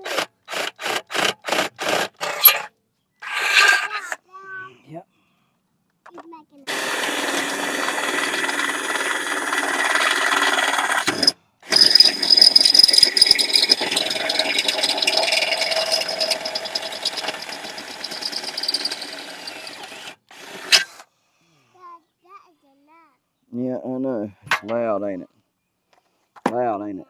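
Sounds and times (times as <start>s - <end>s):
power drill boring into wood: 0.0s - 4.2s, 6.7s - 21.0s.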